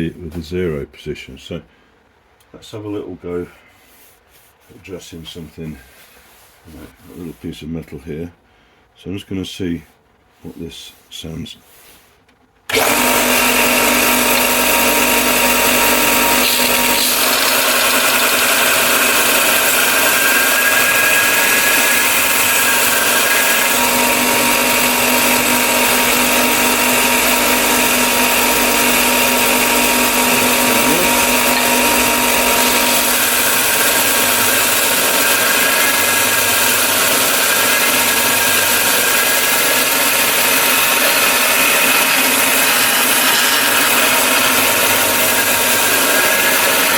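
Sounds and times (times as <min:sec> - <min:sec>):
sander grinding metal: 0:12.7 - 0:46.9.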